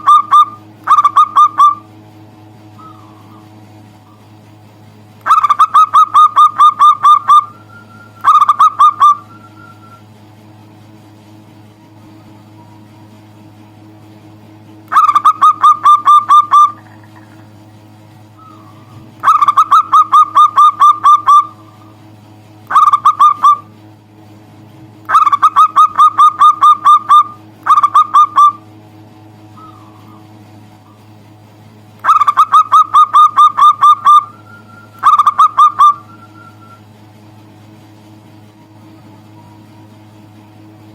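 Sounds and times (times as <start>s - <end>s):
dove calling: 0.0s - 2.0s, 2.6s - 4.5s, 5.2s - 10.2s, 14.9s - 23.9s, 25.0s - 31.2s, 32.0s - 37.0s, 38.7s - 40.1s.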